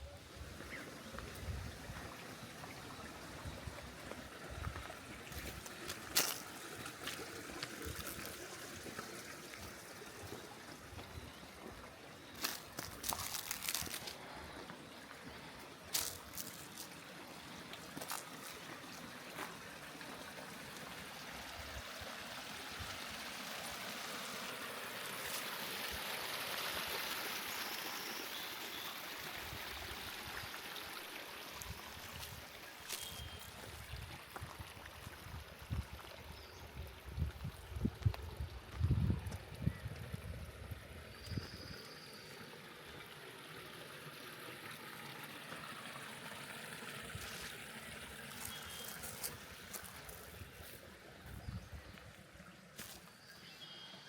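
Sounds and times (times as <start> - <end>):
stream water rushing: 0.2 - 37.6, 40.6 - 53.2.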